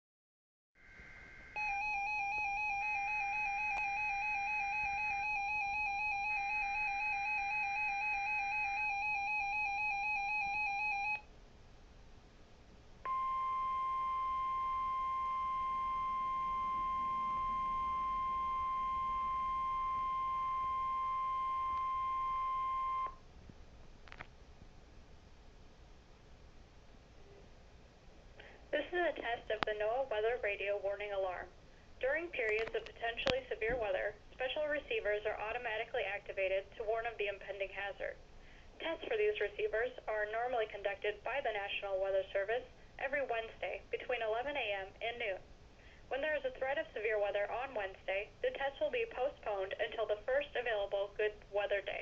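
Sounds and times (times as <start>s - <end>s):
steady alarm tone: 0.8s - 11.3s, 13.1s - 23.2s
warbling tone: 13.1s - 23.1s.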